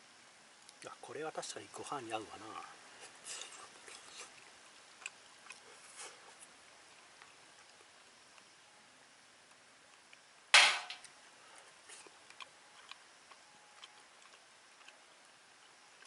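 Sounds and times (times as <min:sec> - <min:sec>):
campfire wood crackling: 0:00.0 - 0:16.0
sharp loud pop: 0:10.6 - 0:11.0.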